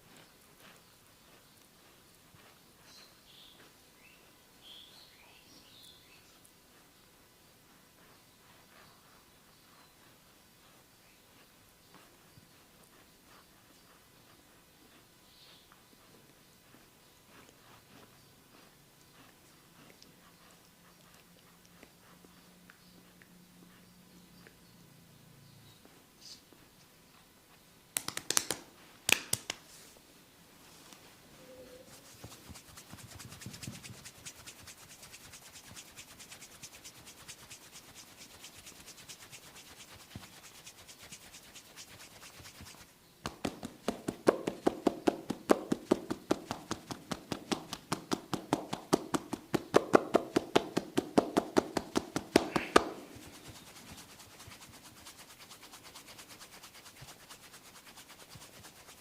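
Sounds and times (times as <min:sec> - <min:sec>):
hands striking body rhythmically: 0:28.0 - 0:29.6, 0:43.2 - 0:53.3
sharp slaps: 0:28.0 - 0:29.6, 0:43.2 - 0:53.0.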